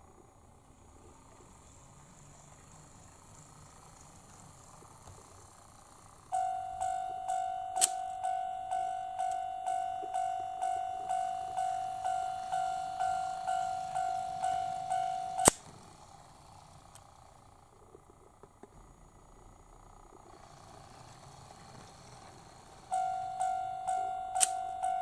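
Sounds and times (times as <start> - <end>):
level crossing bell dinging: 6.3 - 15.6, 22.9 - 25.0
sharp click: 7.8 - 8.1, 24.4 - 24.6.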